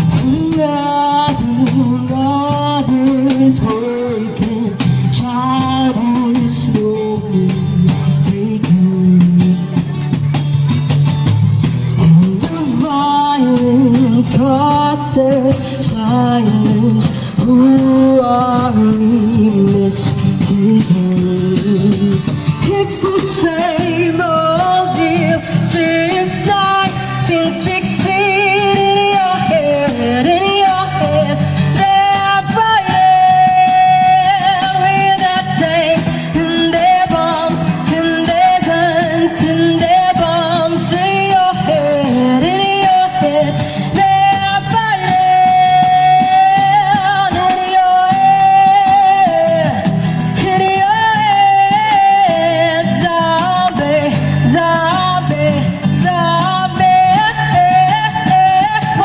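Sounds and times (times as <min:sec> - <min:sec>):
instrumental backing music: 0:00.0 - 0:59.0
person singing with vibrato: 0:12.0 - 0:59.0.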